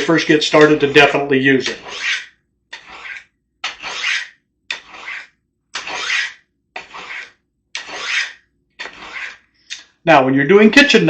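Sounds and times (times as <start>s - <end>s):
knife scraping on sharpener rods: 1.6s - 9.9s.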